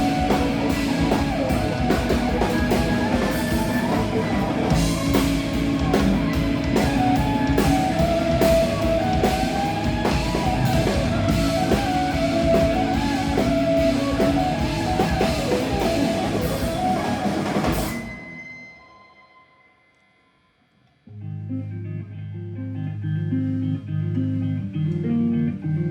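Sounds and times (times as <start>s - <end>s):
rock band playing: 0.0s - 19.0s.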